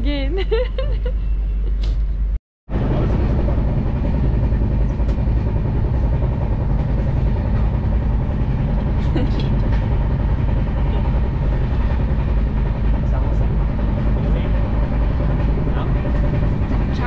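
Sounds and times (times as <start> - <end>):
train running rumble: 0.0 - 17.0.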